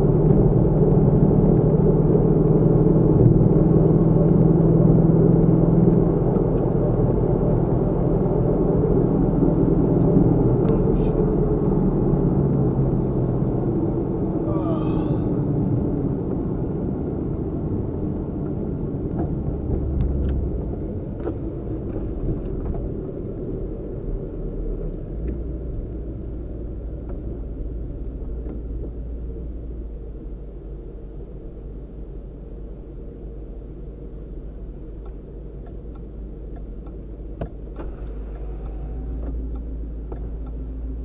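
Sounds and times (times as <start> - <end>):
car engine rumble: 0.0 - 41.0
road noise: 0.0 - 41.0.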